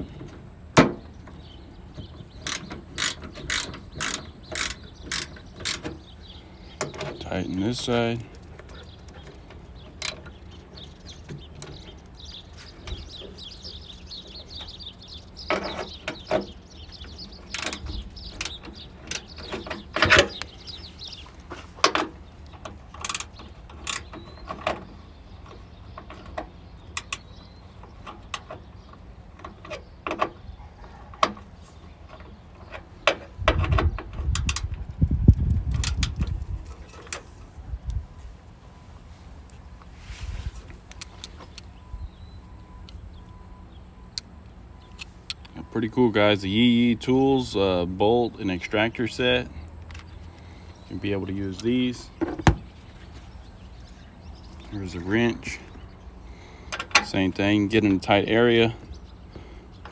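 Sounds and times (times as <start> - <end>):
ratchet wrench clicking: 2.4 - 6.0, 17.5 - 19.3, 23.0 - 24.1, 35.8 - 36.2.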